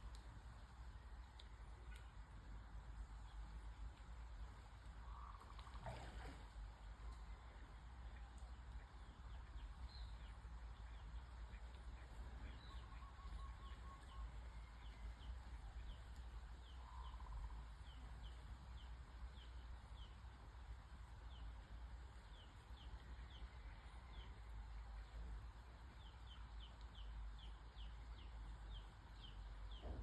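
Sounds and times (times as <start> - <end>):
low steady rumble: 0.0 - 30.0
faint bird chirps: 5.0 - 6.4, 10.9 - 18.4.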